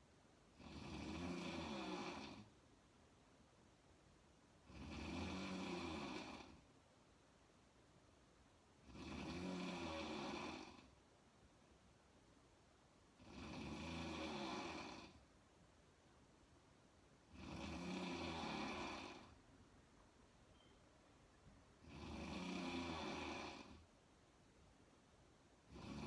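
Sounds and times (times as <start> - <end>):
woman snoring: 0.5 - 2.5, 4.6 - 6.6, 8.8 - 10.9, 13.2 - 15.2, 17.3 - 19.4, 21.8 - 23.9, 25.7 - 26.0.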